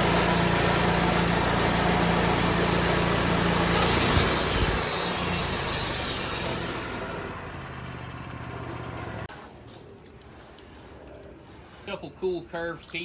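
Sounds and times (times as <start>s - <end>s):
saw blade hissing whine: 0.0s - 7.6s
sawmill engine under load: 0.0s - 9.8s.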